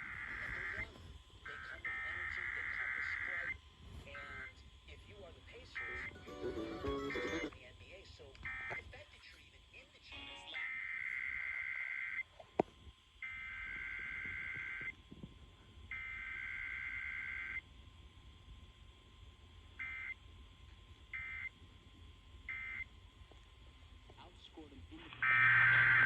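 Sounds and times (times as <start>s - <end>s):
buzzing digital data bursts: 5.7s - 7.5s, 25.2s - 26.0s.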